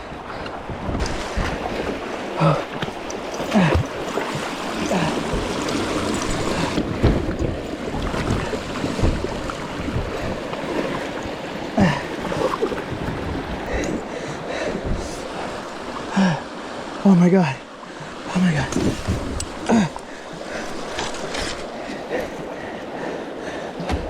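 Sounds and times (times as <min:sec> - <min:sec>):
rushing river water: 0:00.0 - 0:24.0
wind buffeting microphone: 0:03.8 - 0:15.8
low thumps: 0:05.3 - 0:10.4.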